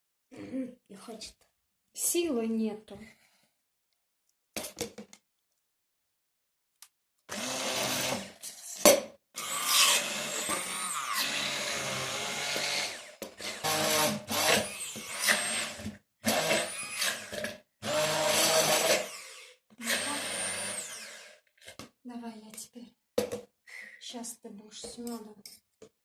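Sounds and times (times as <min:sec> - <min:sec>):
hand blender motor pureeing: 0:07.3 - 0:21.5.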